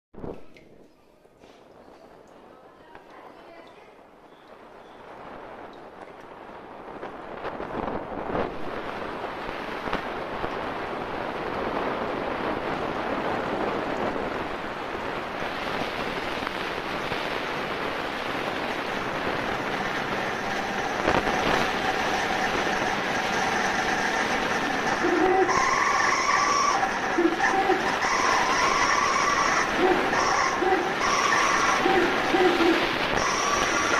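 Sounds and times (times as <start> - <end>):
faint whine: 0.2 - 33.9
washing machine spinning: 17.4 - 33.9.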